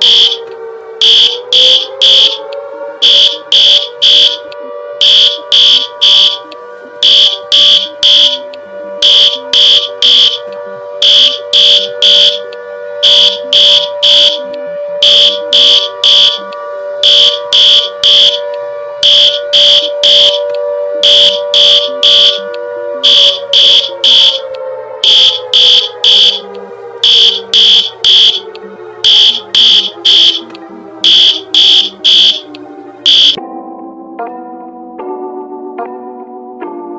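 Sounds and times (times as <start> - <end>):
low synthesized drone: 0.0 - 33.4
shrill high beeps: 5.0 - 6.4, 7.0 - 8.4, 11.0 - 12.4, 13.0 - 14.4, 17.0 - 18.4, 19.0 - 20.4, 21.0 - 22.4, 23.0 - 24.4, 25.0 - 26.4, 27.0 - 28.4, 29.0 - 32.4, 33.1 - 33.4.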